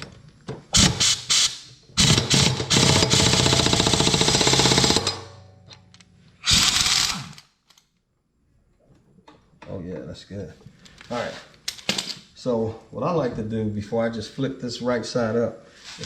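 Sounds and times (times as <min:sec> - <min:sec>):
air impact wrench rattling: 0:00.8 - 0:05.4, 0:06.4 - 0:07.4.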